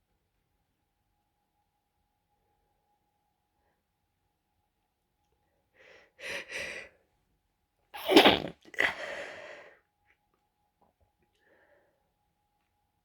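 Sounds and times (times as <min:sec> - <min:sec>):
stifled sneezes: 0:08.0 - 0:09.4.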